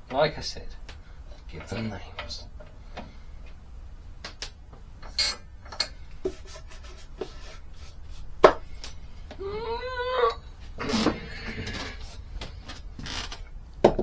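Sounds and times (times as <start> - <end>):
tools clicking and knocking: 4.2 - 6.5.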